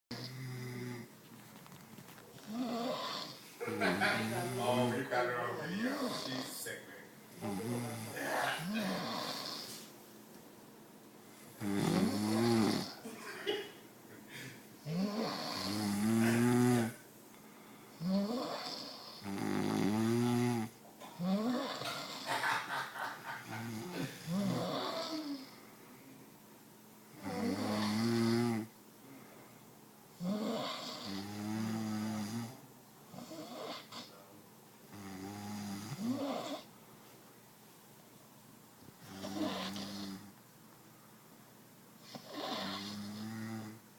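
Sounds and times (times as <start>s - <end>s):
woman snoring: 2.5s - 3.4s, 7.4s - 9.8s, 11.6s - 13.0s, 14.8s - 17.0s, 18.0s - 22.3s, 23.6s - 25.6s, 27.2s - 28.7s, 30.2s - 32.6s, 33.2s - 34.1s, 34.9s - 36.7s, 39.0s - 40.3s, 42.0s - 43.8s
quiet breathing: 14.1s - 19.3s, 23.8s - 26.4s, 29.0s - 29.9s.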